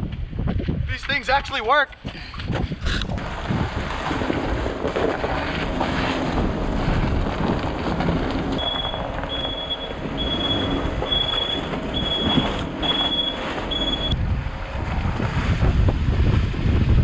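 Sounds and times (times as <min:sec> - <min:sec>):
wind noise: 0:00.0 - 0:17.0
van engine rumbling: 0:03.1 - 0:17.0
electronic warning chime beeping: 0:08.6 - 0:14.2.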